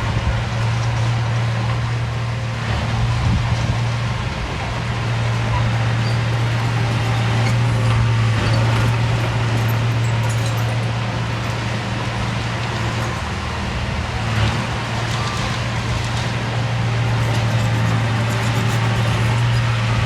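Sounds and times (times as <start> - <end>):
diesel engine droning: 0.0 - 20.0.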